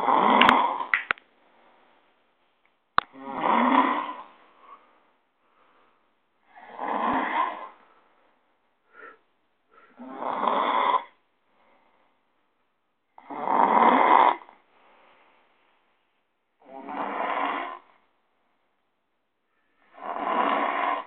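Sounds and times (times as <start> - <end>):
man snoring heavily: 0.0 - 0.9, 3.2 - 4.3, 6.6 - 7.8, 9.9 - 11.2, 13.2 - 14.5, 16.6 - 17.9, 19.9 - 21.0.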